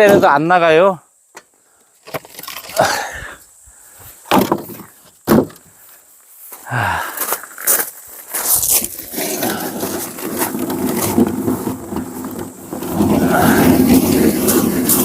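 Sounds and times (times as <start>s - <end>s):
axe splitting firewood: 4.3s - 5.7s, 8.8s - 15.0s.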